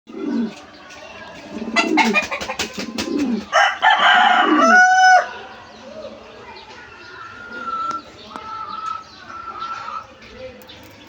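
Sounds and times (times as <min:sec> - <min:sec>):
pigeons cooing: 0:00.1 - 0:10.3
rooster crowing: 0:03.5 - 0:05.4.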